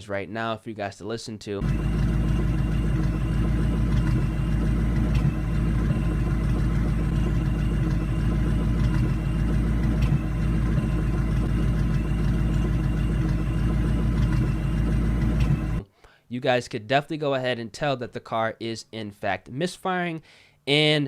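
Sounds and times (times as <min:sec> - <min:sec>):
car engine idling unevenly: 0:01.6 - 0:15.8.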